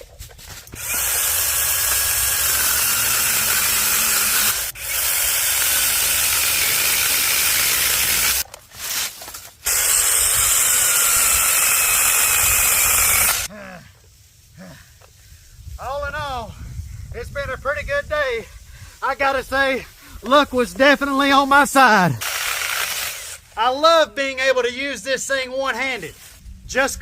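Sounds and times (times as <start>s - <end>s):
mini chainsaw cutting wood: 0.7s - 13.5s, 22.2s - 23.5s.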